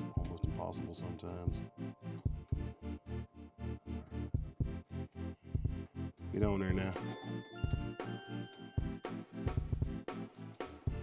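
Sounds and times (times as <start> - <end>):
music with pulsing beat: 0.0 - 11.0.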